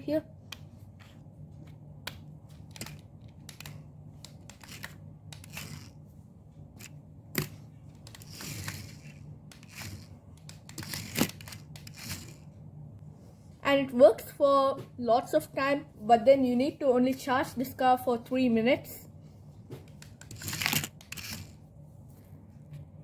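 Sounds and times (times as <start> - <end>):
rc car whirring: 4.5 - 6.0, 8.0 - 12.4, 20.2 - 21.6.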